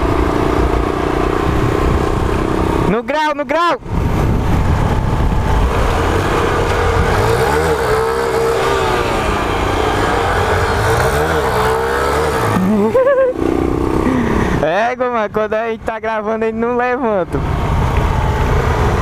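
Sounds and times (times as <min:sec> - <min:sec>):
wind noise on microphone: 0:00.0 - 0:02.9, 0:03.8 - 0:07.8
motorcycle engine under throttle: 0:00.0 - 0:03.1, 0:03.8 - 0:15.0, 0:16.3 - 0:19.0.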